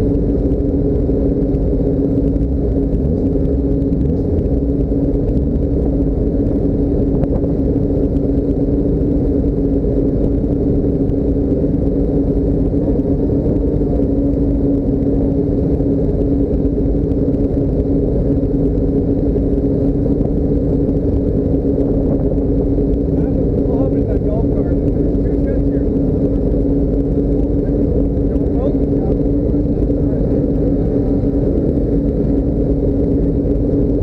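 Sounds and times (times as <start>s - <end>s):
vehicle engine and road noise: 0.0s - 34.0s.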